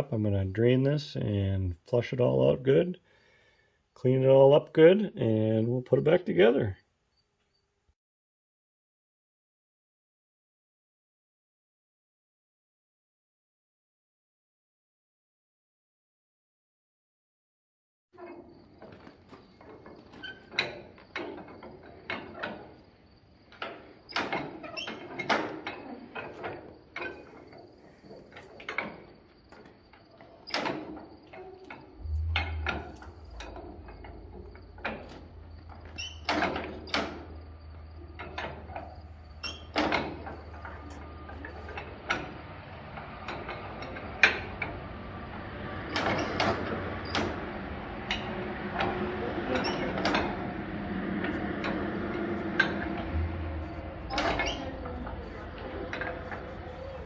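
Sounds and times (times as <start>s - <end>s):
low steady hum: 31.3s - 45.8s, 46.6s - 57.0s.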